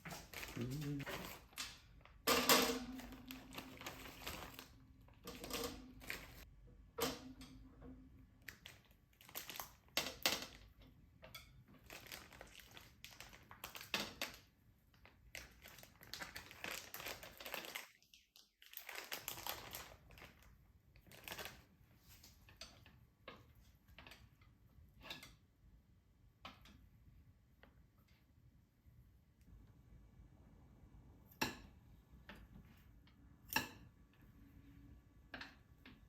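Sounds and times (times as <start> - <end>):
crinkling: 0.0 - 6.5, 8.4 - 10.6, 11.8 - 22.8.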